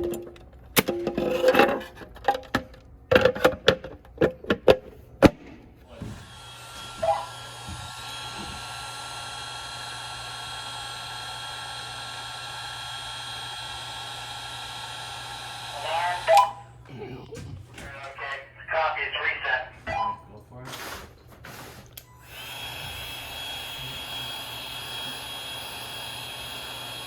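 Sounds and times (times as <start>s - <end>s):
heat gun blowing with faint whine: 5.9s - 16.5s, 21.9s - 27.0s.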